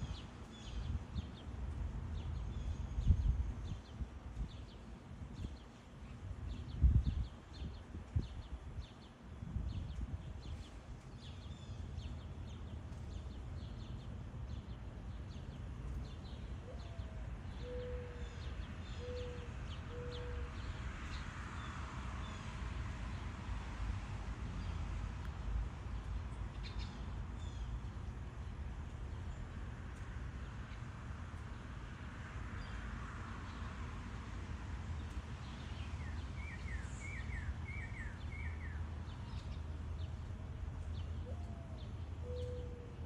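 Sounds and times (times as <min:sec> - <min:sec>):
low hooting bird call: 0:41.2 - 0:43.0.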